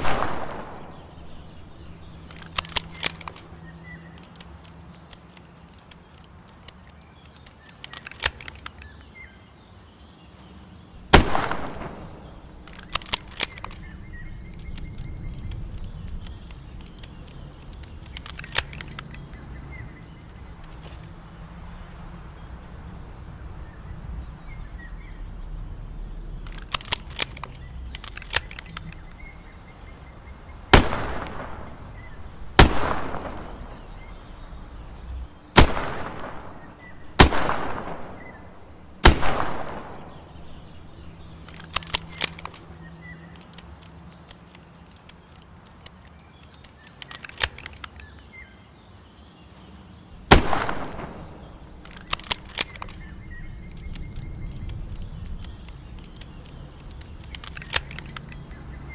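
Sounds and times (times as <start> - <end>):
revolver shots echoing: 0.0 - 1.6, 11.1 - 12.6, 30.7 - 34.4, 35.5 - 40.8, 50.3 - 51.8
light metallic clicking: 0.0 - 9.3, 11.2 - 21.5, 24.3 - 48.4, 50.3 - 58.9.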